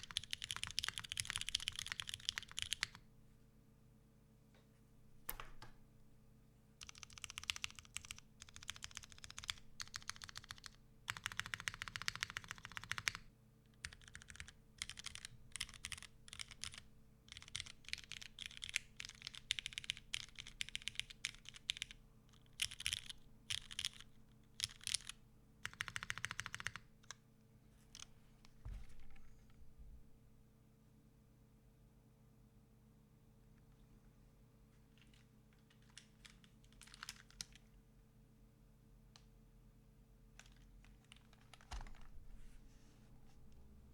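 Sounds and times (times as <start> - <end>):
mechanical keyboard typing: 0.0 - 3.0, 6.8 - 13.2, 13.8 - 27.2, 35.0 - 37.6, 40.4 - 42.1.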